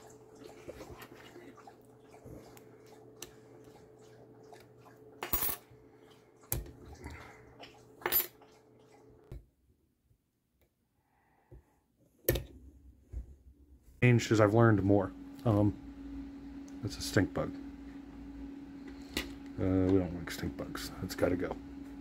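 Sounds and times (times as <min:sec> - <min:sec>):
low hum: 0:14.1 - 0:22.0.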